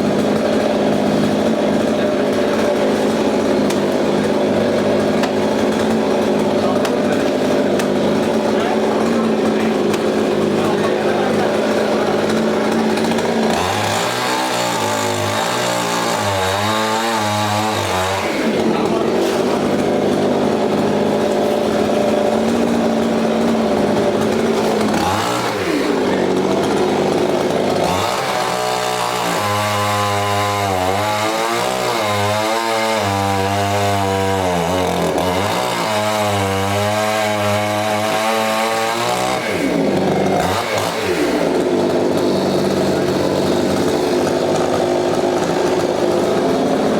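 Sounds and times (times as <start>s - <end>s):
chainsaw cutting wood: 0.0s - 46.9s.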